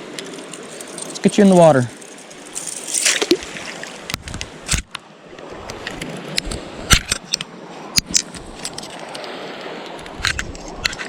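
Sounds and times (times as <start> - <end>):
small stream running: 0.0 - 11.0
fish splashing into water: 2.5 - 4.1.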